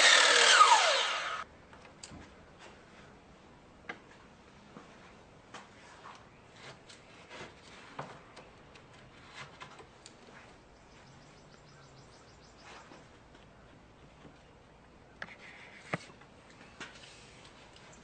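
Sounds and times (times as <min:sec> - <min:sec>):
wood and tools clicking and knocking: 0:05.5 - 0:10.5.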